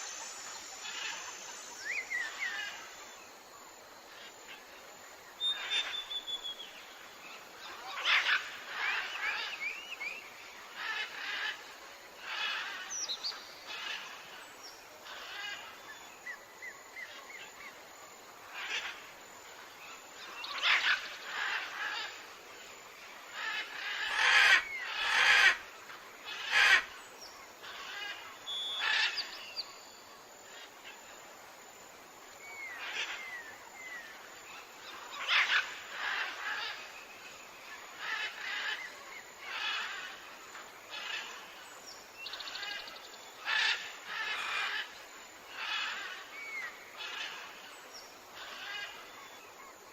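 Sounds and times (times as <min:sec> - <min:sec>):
small curved whistles: 0:00.0 - 0:03.0, 0:05.4 - 0:06.7
birds calling and chirping: 0:23.3 - 0:29.9, 0:32.4 - 0:49.5.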